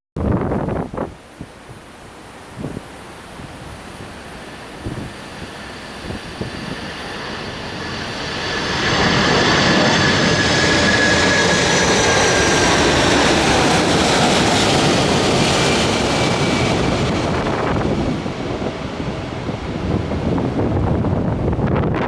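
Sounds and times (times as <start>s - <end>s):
high jet engine whine: 2.0s - 22.0s
jet airliner passing overhead: 3.5s - 22.0s.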